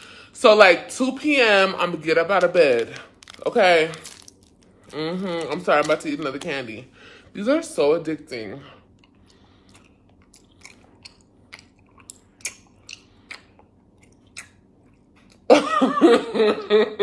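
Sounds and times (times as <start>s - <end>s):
person chewing candy: 2.4s - 6.5s, 8.8s - 15.5s.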